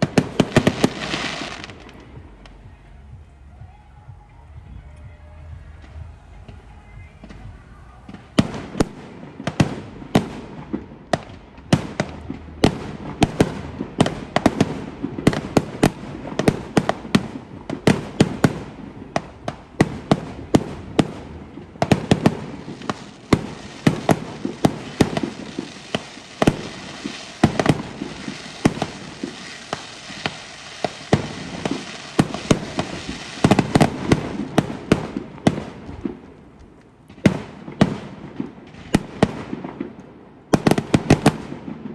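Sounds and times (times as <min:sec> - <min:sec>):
fireworks bangs: 0:00.0 - 0:41.9.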